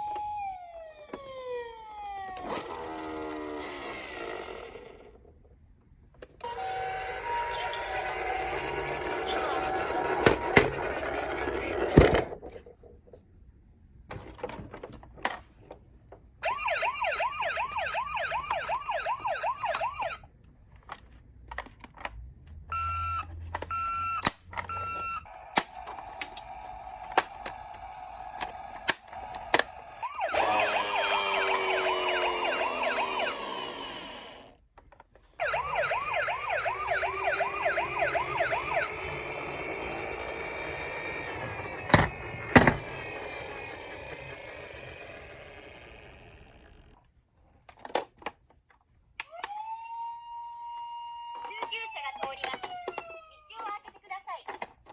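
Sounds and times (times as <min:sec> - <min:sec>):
toy electronic sirens: 0:00.0 - 0:05.1, 0:06.4 - 0:11.8, 0:16.4 - 0:20.3, 0:22.7 - 0:34.6, 0:35.4 - 0:46.9, 0:49.3 - 0:53.6.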